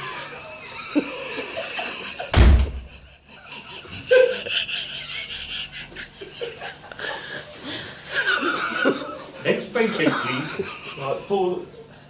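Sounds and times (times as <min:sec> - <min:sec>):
people chuckling: 0:00.0 - 0:11.9
door banging shut: 0:02.3 - 0:03.0.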